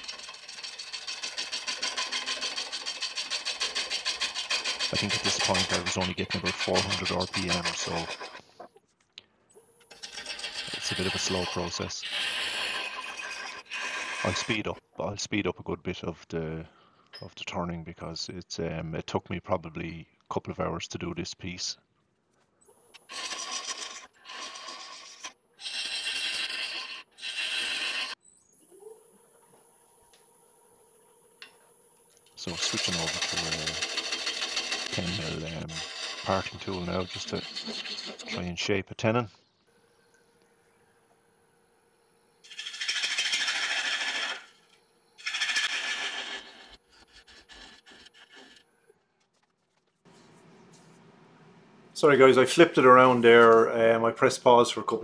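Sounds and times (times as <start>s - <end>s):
gouge scraping wood on lathe: 0.0s - 8.7s, 9.9s - 14.7s, 23.0s - 28.2s, 32.4s - 38.5s, 42.5s - 44.5s, 45.2s - 48.6s
faint steady whine: 38.4s - 42.5s.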